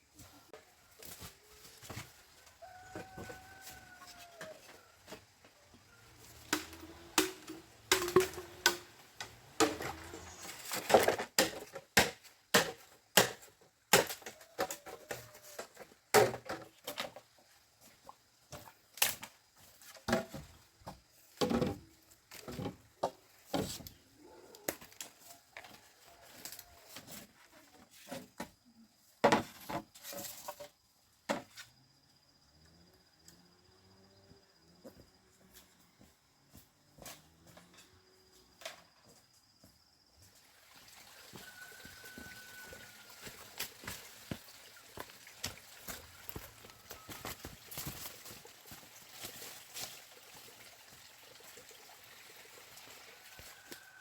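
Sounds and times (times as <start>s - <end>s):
chopping strikes on wood: 11.4s - 14.3s.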